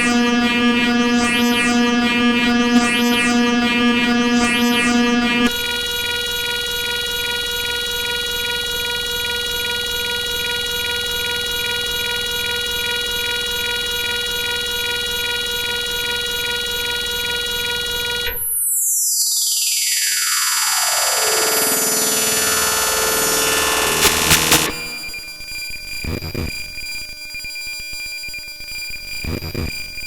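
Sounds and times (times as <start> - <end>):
harsh synthesizer chord: 0.0 - 5.5, 19.8 - 25.4
descending cascade of notes: 19.4 - 25.4.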